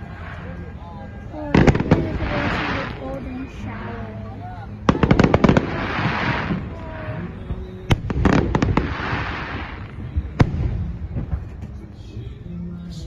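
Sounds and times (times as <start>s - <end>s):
fireworks bangs: 0.0s - 4.1s, 4.8s - 11.9s
string of firework reports: 0.0s - 11.4s
hissing firework spray: 1.6s - 3.3s, 5.0s - 7.3s, 7.9s - 10.0s.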